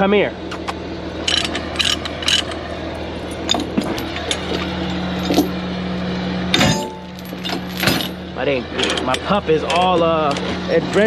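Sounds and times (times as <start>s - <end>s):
truck engine idling: 0.0s - 11.0s
light metallic jingling: 6.5s - 10.4s.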